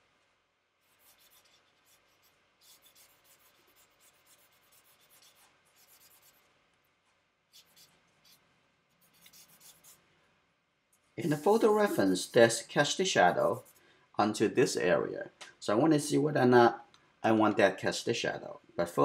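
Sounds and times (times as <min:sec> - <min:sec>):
charcoal scratching on paper: 0:00.8 - 0:06.5, 0:07.5 - 0:10.0, 0:11.2 - 0:13.8.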